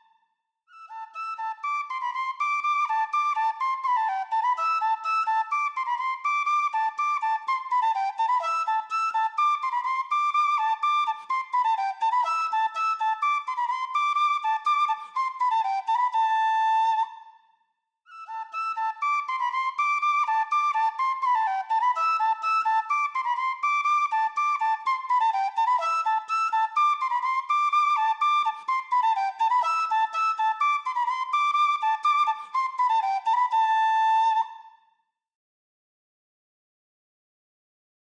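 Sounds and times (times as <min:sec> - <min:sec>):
flute-like wind instrument: 0:00.7 - 0:17.5, 0:18.1 - 0:35.0.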